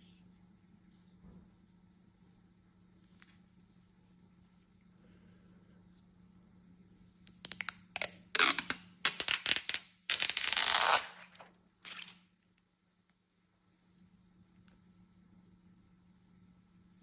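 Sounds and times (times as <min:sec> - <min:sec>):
rasping packaging rustles: 0:08.4 - 0:12.2.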